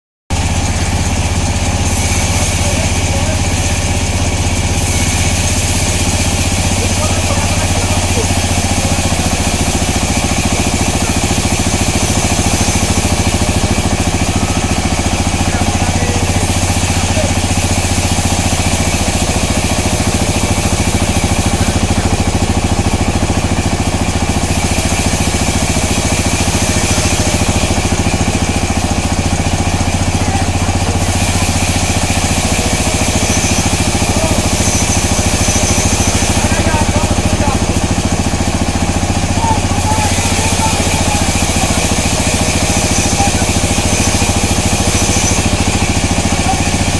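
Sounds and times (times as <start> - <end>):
sawmill machinery humming: 0.3 - 46.9.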